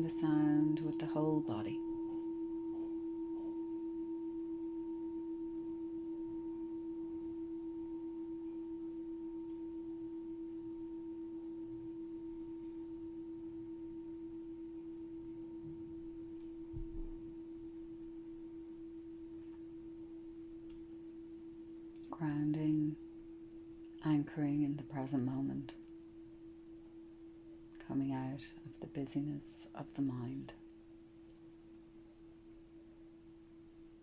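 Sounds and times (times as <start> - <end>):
meditation bell ringing: 0.0 - 24.0
faint low knock: 15.6 - 17.3.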